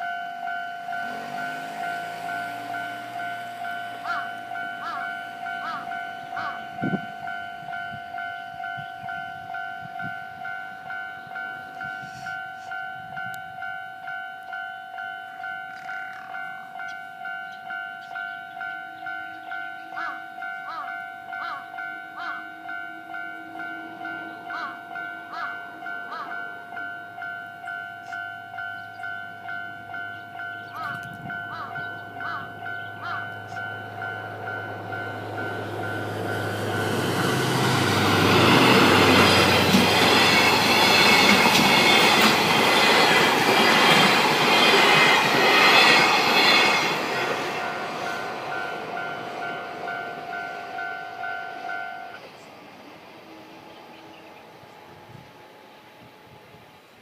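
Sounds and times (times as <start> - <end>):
level crossing bell ringing: 0.0 - 52.2
freight train passing: 0.0 - 57.0
wheel clatter over rail joints: 34.8 - 48.5.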